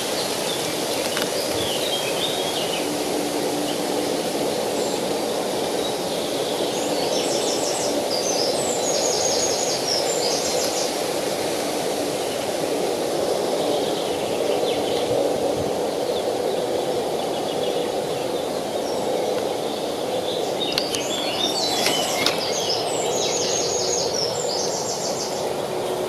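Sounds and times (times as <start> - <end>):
river water running: 19.7 - 25.8
bird trilling: 20.7 - 24.0.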